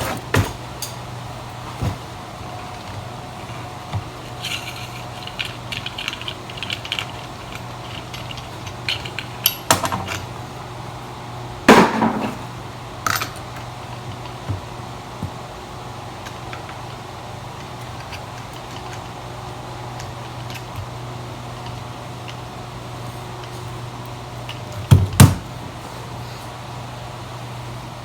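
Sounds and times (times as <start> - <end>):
metal tools clinking and rattling: 4.2 - 10.4, 13.0 - 14.4.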